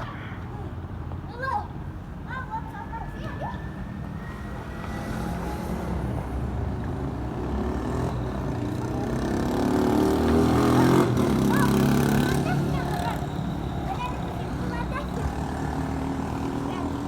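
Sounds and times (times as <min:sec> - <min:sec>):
vehicle engine running: 0:06.8 - 0:17.0.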